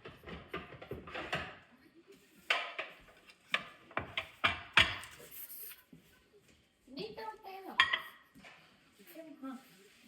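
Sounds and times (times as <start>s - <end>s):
utensils knocking on cookware: 0.0s - 1.6s, 2.5s - 5.1s, 7.8s - 8.2s.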